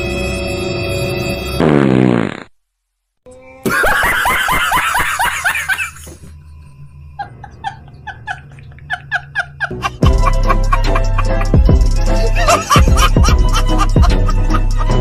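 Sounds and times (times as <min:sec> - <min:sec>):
person giggling: 0:03.6 - 0:06.3, 0:07.2 - 0:15.0
person laughing: 0:03.6 - 0:06.3, 0:07.2 - 0:15.0.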